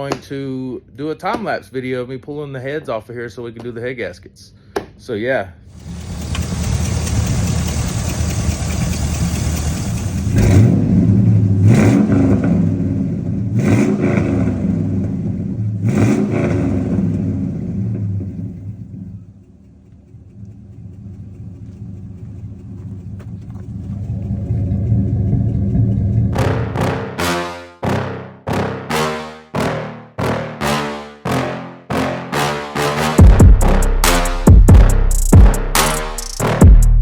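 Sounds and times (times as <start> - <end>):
truck engine revving: 5.7 - 19.1, 20.2 - 31.7, 32.3 - 37.0.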